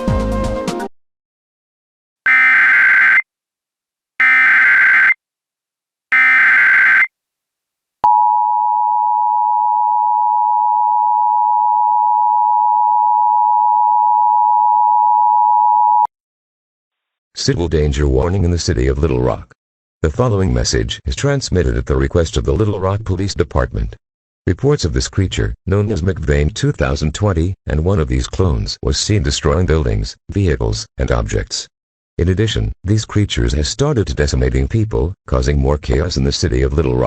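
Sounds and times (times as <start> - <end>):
digital data tone bursts: 4.2 - 5.2, 6.1 - 7.1.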